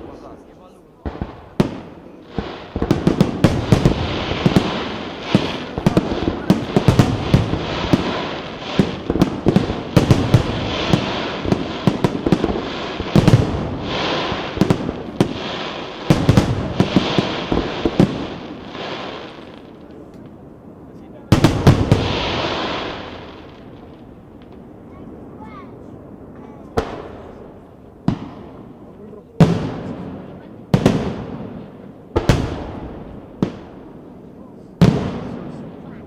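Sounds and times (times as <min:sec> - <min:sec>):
fireworks bangs: 0:00.0 - 0:36.0.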